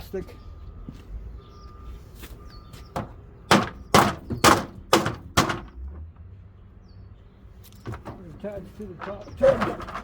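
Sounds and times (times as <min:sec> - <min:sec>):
sharp knocks on plastic pins: 0:03.0 - 0:05.7.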